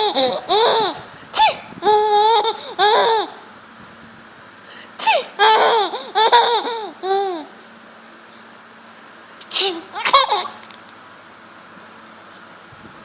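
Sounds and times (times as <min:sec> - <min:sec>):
baby laughing: 0:00.0 - 0:03.5, 0:05.1 - 0:07.6, 0:09.4 - 0:10.6
fake sneezes: 0:01.4 - 0:01.7, 0:05.0 - 0:05.4, 0:09.4 - 0:09.9.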